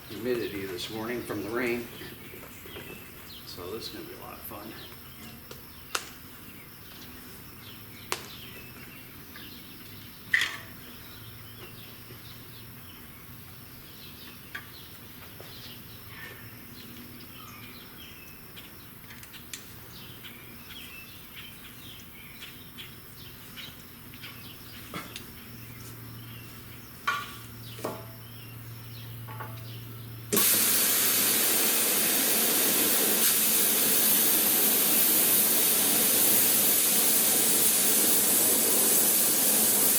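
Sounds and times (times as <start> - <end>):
cutting torch gas hiss: 30.3 - 39.9.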